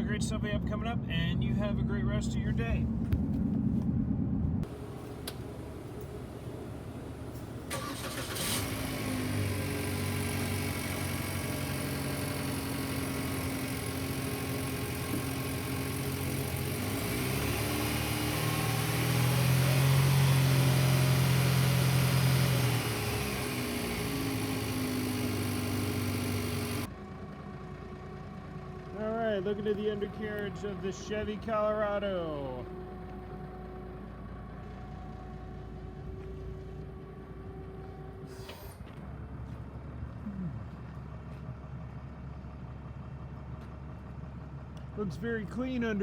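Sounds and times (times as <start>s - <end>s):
engine idling and revving: 0.0s - 46.0s
engine cranking and starting: 4.6s - 26.9s.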